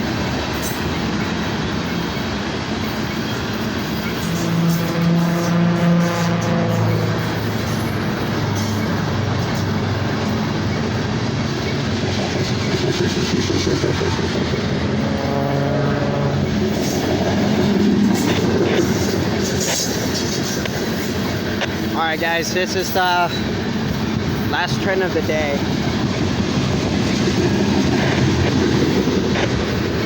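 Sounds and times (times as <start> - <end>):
freight train rumbling: 0.0 - 30.0.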